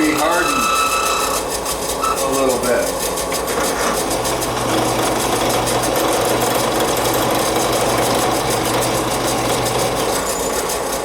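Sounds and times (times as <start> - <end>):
drill bit grinding through steel: 0.0 - 11.0
drill press motor hum: 3.2 - 11.0.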